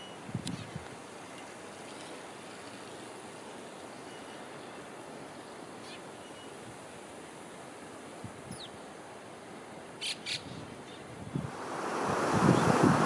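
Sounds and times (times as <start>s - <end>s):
faint outdoor rushing noise: 11.4s - 13.0s.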